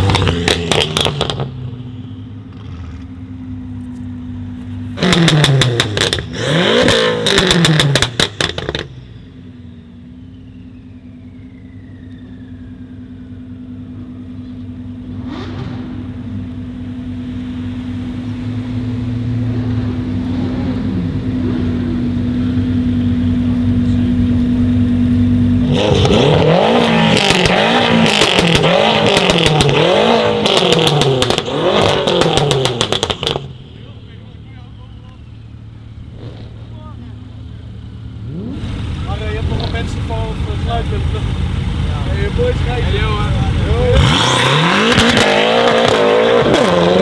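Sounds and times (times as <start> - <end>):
exhaust crackles and pops: 0.0 - 1.7, 2.4 - 9.0, 23.3 - 47.0
car engine idling and revving: 0.0 - 47.0.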